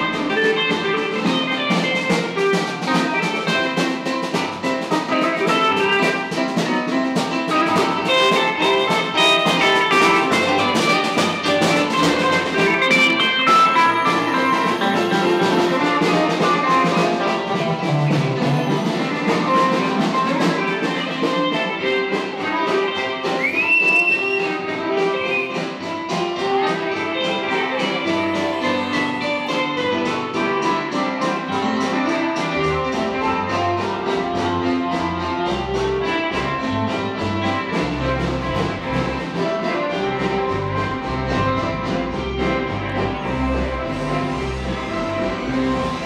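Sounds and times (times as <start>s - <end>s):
music with guitar and drums: 0.0s - 46.0s
high whistle-like tone: 12.9s - 16.2s, 23.3s - 24.6s, 25.2s - 25.8s.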